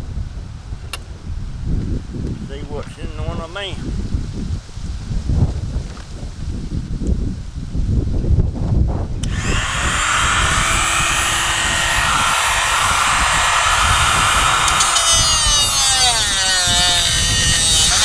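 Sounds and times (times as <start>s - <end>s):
power tool whining: 9.2s - 18.0s.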